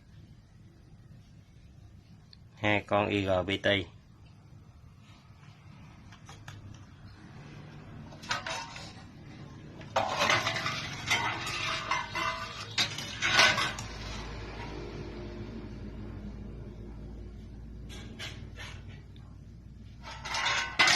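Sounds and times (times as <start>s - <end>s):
low hum: 6.9s - 20.9s
metal clinking and clattering: 8.1s - 14.4s, 20.0s - 20.9s.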